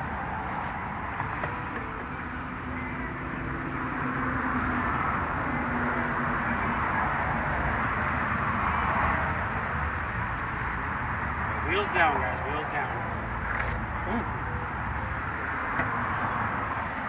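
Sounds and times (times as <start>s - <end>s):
skateboard wheels rolling on pavement: 0.0s - 2.7s, 12.9s - 14.0s.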